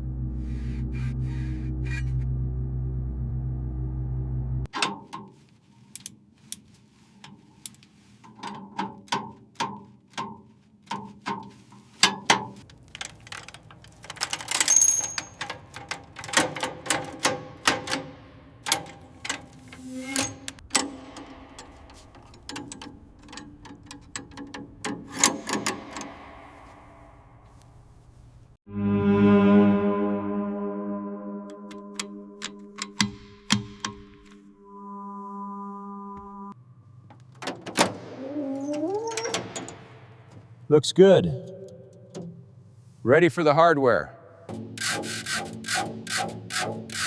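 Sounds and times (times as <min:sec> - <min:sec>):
low hum: 0:00.0 - 0:04.7, 0:17.9 - 0:37.4
hand tools clanking on metal: 0:08.2 - 0:26.3.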